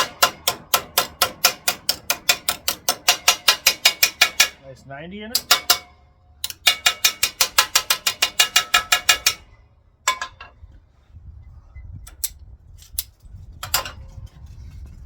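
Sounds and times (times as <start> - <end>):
hammer blows on sheet steel: 0.0 - 4.6, 6.6 - 9.5.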